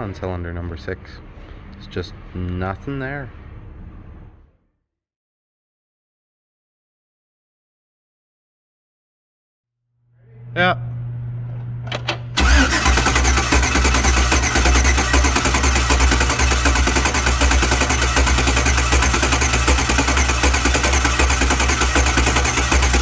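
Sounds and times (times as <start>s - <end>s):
rough misfiring engine rumble: 12.1s - 23.0s.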